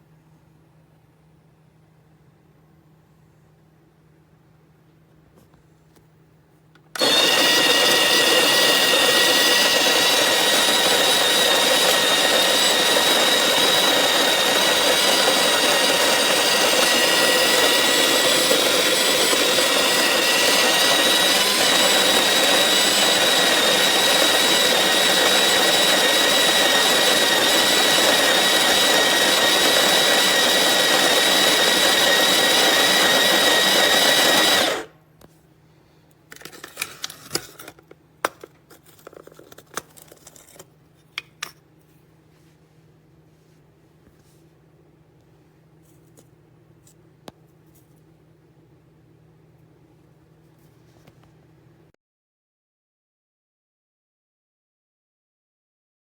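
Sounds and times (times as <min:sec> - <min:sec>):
coffee grinder running: 0:07.0 - 0:34.9.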